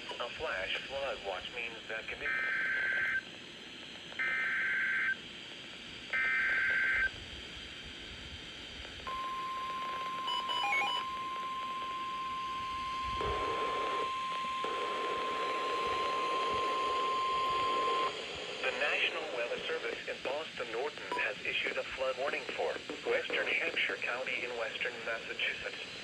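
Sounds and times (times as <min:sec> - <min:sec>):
static hiss: 0:00.0 - 0:26.0
screeching two-tone data bursts: 0:09.1 - 0:18.2.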